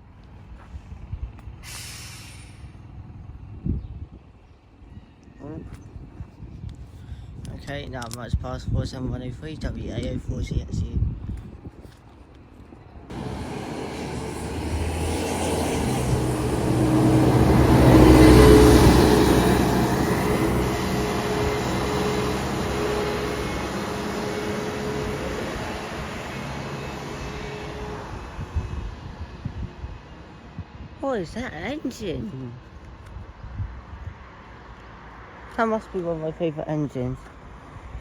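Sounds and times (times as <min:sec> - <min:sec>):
passing engine drone: 0:13.1 - 0:29.6.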